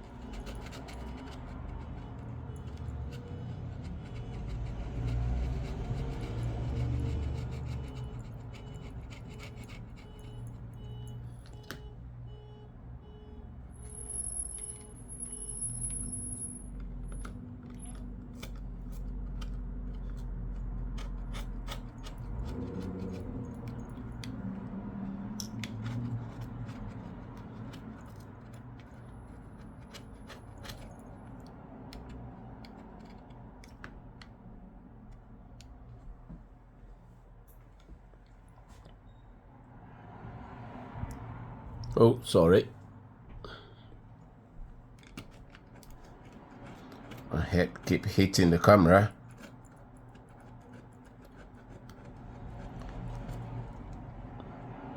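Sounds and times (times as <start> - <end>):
hand tool scraping and clicking: 0.0 - 10.9, 14.0 - 34.4, 45.0 - 54.0.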